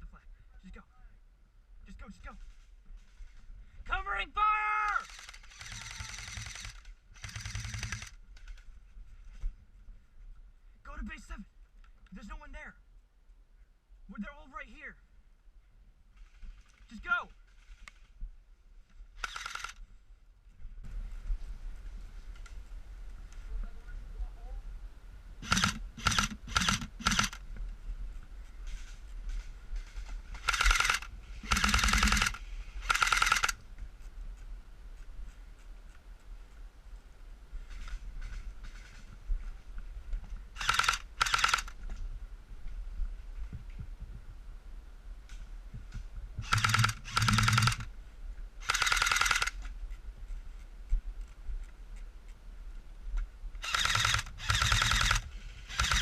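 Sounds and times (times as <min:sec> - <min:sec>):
airsoft gun firing bursts: 0:05.0 - 0:08.2, 0:19.2 - 0:19.8, 0:25.4 - 0:27.4, 0:30.3 - 0:33.6, 0:40.6 - 0:41.7, 0:46.4 - 0:47.9, 0:48.6 - 0:49.6, 0:53.6 - 0:56.0.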